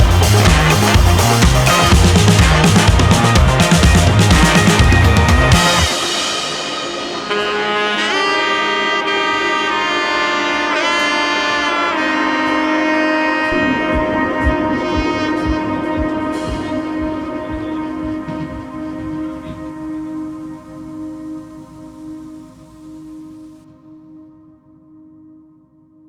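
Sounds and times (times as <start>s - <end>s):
low steady beat: 0.0s - 8.1s, 13.4s - 23.2s
saxophone-like brass notes: 0.0s - 24.0s.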